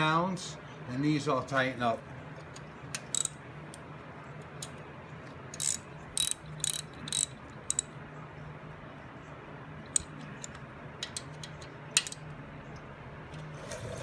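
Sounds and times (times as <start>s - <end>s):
ratchet wrench clicking: 2.9s - 3.4s, 5.5s - 7.9s, 11.5s - 12.2s.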